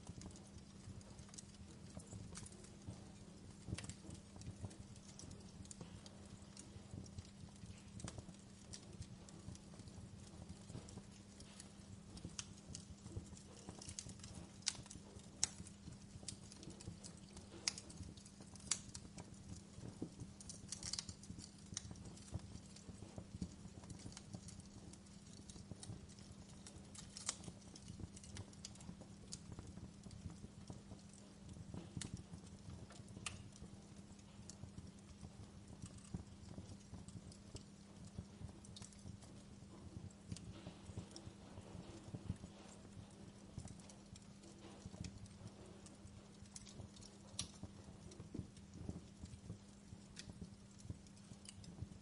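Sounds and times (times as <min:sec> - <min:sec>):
faint low hum: 0:00.0 - 0:52.0
wood fire crackling: 0:00.0 - 0:52.0.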